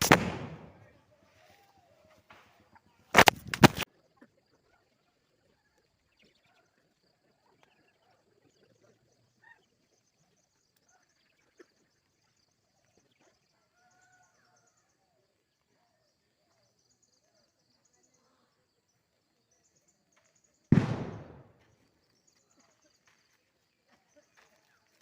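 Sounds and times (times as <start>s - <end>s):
loud bang: 0.0s - 0.8s, 20.8s - 21.5s.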